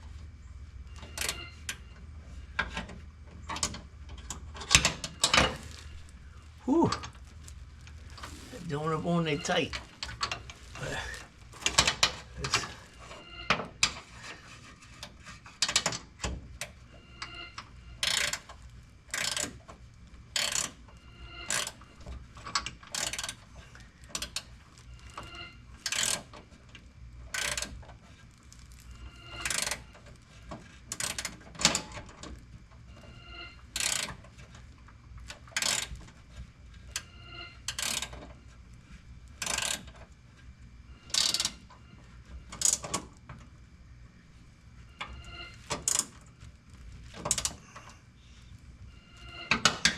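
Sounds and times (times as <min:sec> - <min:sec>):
ratchet wrench clicking: 0:18.0 - 0:18.5, 0:19.1 - 0:19.5, 0:20.4 - 0:20.8, 0:22.9 - 0:23.4, 0:25.8 - 0:26.3, 0:27.3 - 0:27.7, 0:33.8 - 0:34.1, 0:37.7 - 0:38.2, 0:39.4 - 0:39.9, 0:41.1 - 0:41.6.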